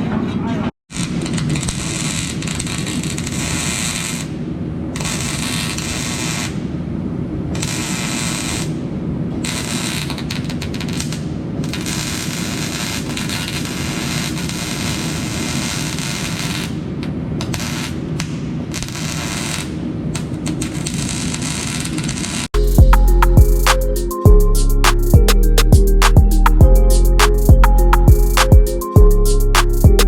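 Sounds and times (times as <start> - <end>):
welding arc crackling: 0.9 - 4.4, 5.0 - 6.7, 7.6 - 8.8, 9.4 - 23.8.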